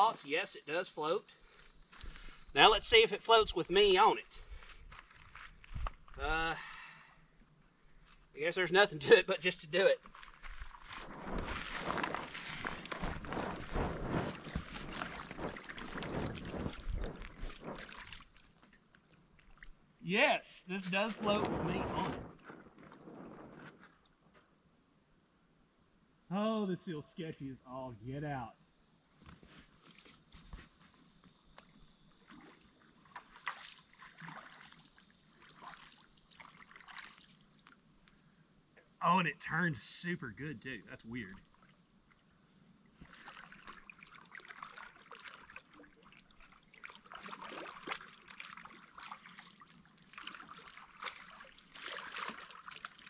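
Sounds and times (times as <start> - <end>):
steady high hiss: 0.0 - 34.0, 37.1 - 43.0
water sloshing and splashing: 10.0 - 19.8, 32.2 - 37.8, 42.9 - 53.0.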